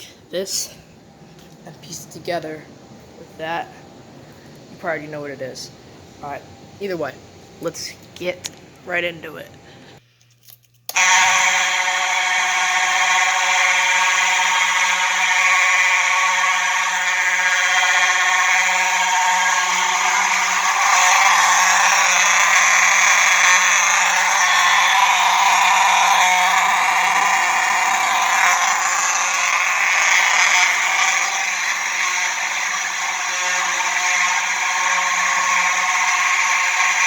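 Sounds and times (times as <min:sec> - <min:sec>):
buzzing alarm horn tone: 0:10.9 - 0:37.0.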